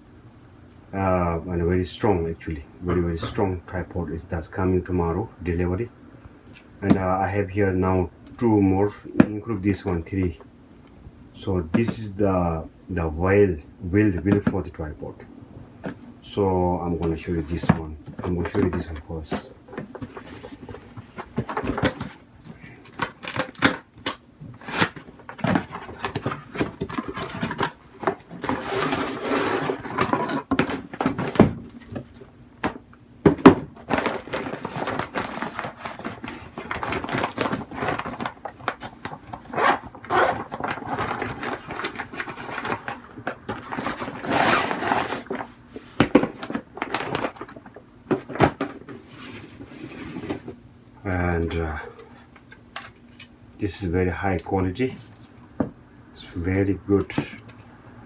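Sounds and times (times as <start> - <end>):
packaging rustling and scraping: 16.9 - 32.8, 33.4 - 50.6.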